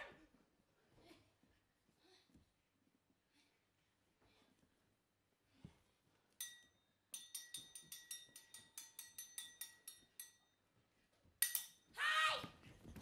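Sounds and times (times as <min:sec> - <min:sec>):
metal clinks ringing: 0:06.4 - 0:10.6, 0:11.4 - 0:12.0.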